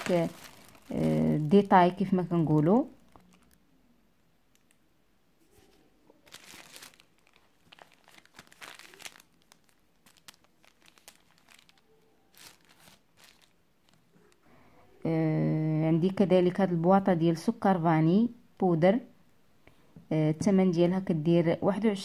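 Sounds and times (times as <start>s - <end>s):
faint packet crinkling: 0.0s - 3.6s, 5.5s - 14.5s.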